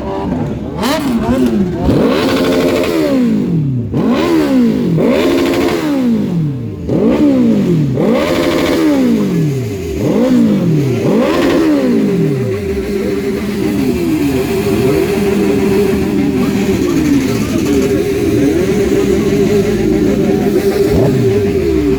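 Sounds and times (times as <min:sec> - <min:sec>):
motorcycle engine idling: 0:00.0 - 0:21.9
motorcycle engine revving: 0:00.0 - 0:21.9.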